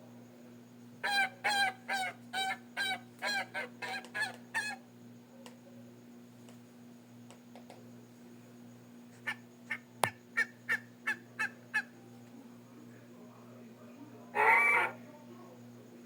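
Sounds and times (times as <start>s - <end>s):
goose-like honking calls: 14.4s - 15.0s.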